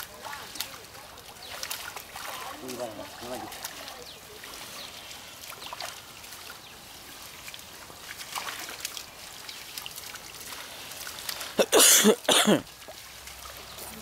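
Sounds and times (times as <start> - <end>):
water trickling and splashing: 0.0 - 14.0.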